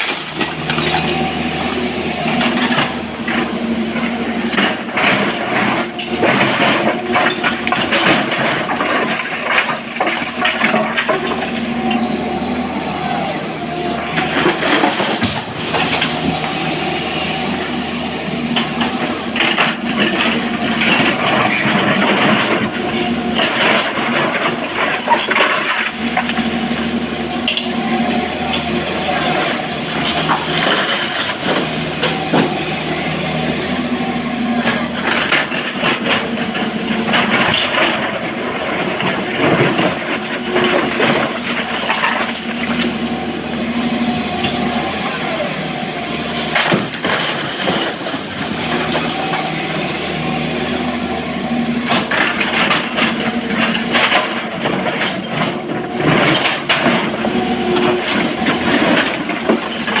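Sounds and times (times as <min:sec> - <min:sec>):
excavator engine under load: 0:00.0 - 1:00.0
rock and steel bucket clattering: 0:02.2 - 0:12.0, 0:18.5 - 0:32.8, 0:34.6 - 0:43.8, 0:51.6 - 1:00.0.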